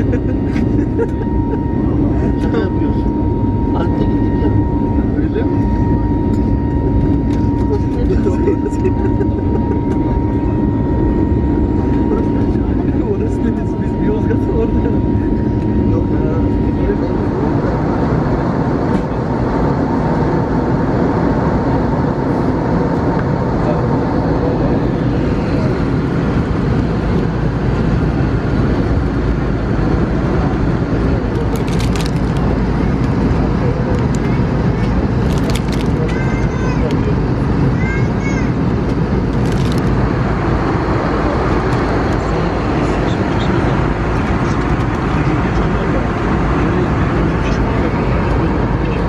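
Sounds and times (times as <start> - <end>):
airplane cabin engine rumble: 0.0 - 49.0.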